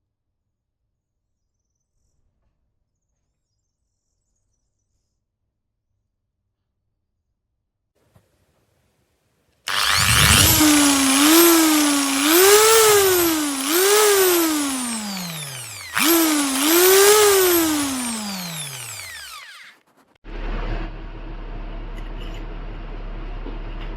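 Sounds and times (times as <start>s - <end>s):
hammer drill motor running: 9.7s - 19.8s.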